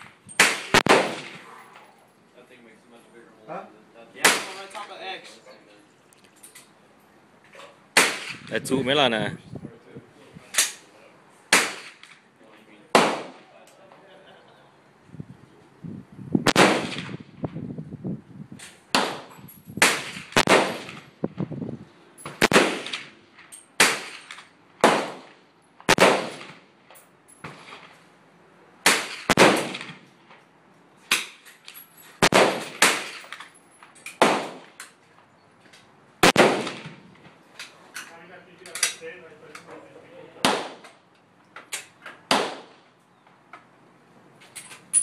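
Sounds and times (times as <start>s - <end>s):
rifle shots: 0.0s - 1.5s, 8.0s - 8.5s, 11.5s - 12.1s, 12.9s - 13.5s, 16.5s - 17.2s, 18.9s - 21.1s, 22.3s - 23.2s, 23.8s - 26.6s, 28.8s - 30.0s, 32.2s - 33.2s, 34.2s - 34.7s, 36.2s - 37.0s, 40.4s - 40.8s, 42.3s - 42.8s.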